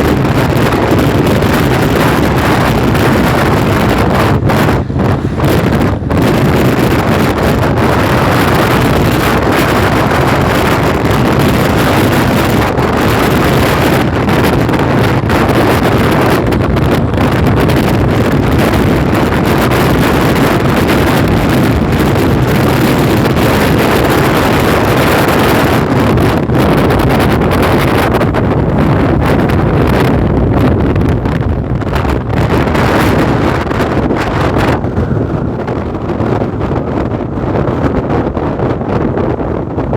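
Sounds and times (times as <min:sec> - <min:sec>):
moving vehicle running: 0:00.0 - 0:39.9
wind buffeting microphone: 0:00.0 - 0:39.9.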